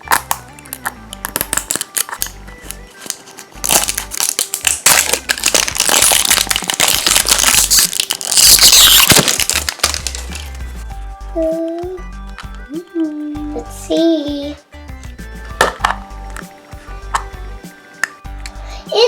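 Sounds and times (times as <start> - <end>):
background music: 0.0 - 19.0
plastic packaging crinkling: 0.1 - 10.8.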